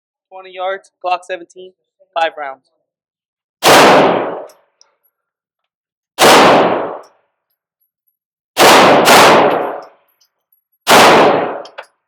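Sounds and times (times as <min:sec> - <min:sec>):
pistol shots with echo: 0:03.6 - 0:04.6, 0:06.2 - 0:07.2, 0:08.6 - 0:10.0, 0:10.9 - 0:11.9.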